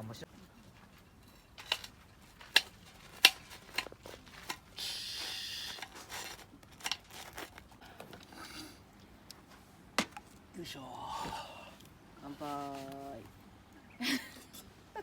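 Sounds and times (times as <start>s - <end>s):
short hiss: 4.8s - 6.0s.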